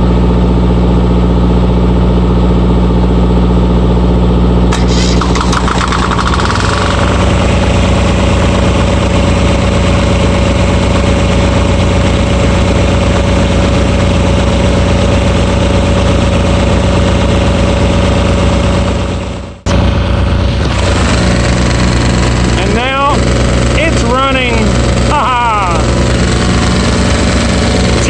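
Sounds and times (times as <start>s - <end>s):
steady whine: 4.6s - 28.0s
small diesel engine pulsing: 4.7s - 18.4s, 19.7s - 28.0s.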